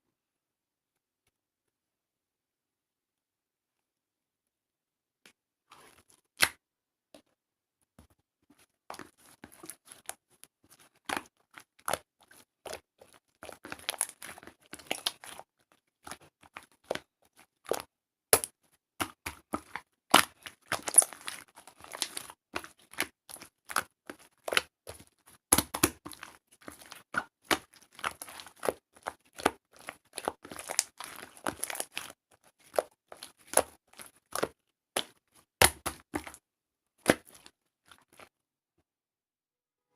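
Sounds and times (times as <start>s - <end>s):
slime crackling and popping: 10.8s - 36.4s.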